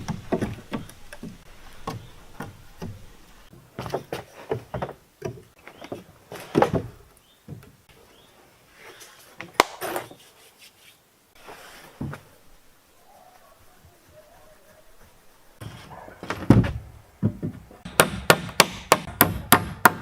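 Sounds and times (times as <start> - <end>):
wood knocking and scraping: 0.0 - 7.8, 11.4 - 12.3, 15.6 - 18.0.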